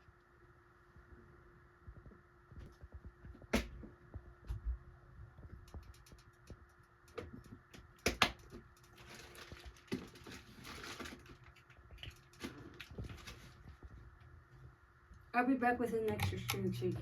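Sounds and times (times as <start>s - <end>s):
rustling: 8.9s - 14.1s.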